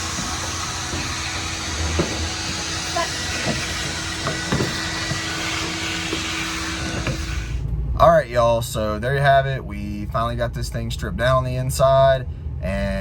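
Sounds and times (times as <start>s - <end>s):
short knocks: 0.0s - 7.3s
pressure washer spraying on metal: 0.0s - 7.6s
low machine hum: 0.0s - 13.0s.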